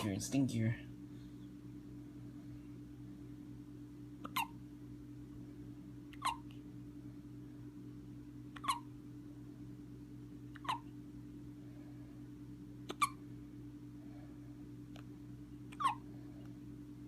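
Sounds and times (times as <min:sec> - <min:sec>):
child hiccuping: 0:04.2 - 0:04.6, 0:06.1 - 0:06.5, 0:08.6 - 0:08.9, 0:10.5 - 0:10.9, 0:12.8 - 0:13.2, 0:15.7 - 0:16.0.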